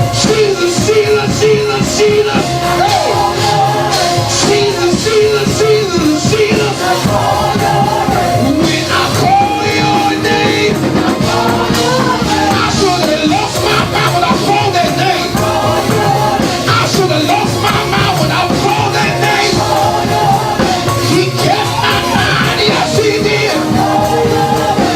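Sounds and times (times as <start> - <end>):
gospel singing with band: 0.0 - 24.9.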